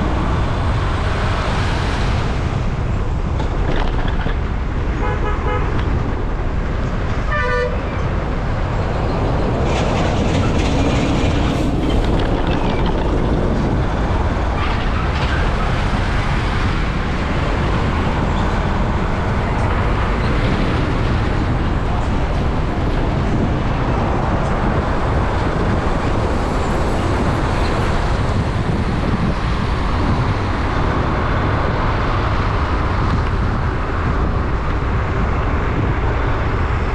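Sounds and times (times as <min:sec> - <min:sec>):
road and wind rumble: 0:00.0 - 0:36.9
vehicle horn honking: 0:05.0 - 0:05.8, 0:07.3 - 0:08.0.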